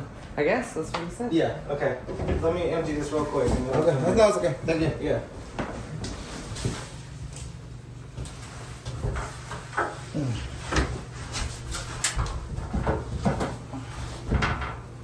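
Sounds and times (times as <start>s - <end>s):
steady low hum: 0.0s - 15.0s
cabinet doors and drawers clattering: 2.0s - 7.0s, 8.8s - 15.0s.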